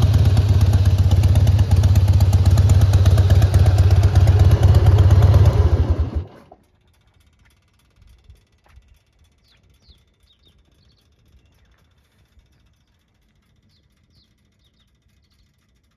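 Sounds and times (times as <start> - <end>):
motorcycle engine running: 0.0 - 6.7
faint bird chirps: 9.3 - 15.7.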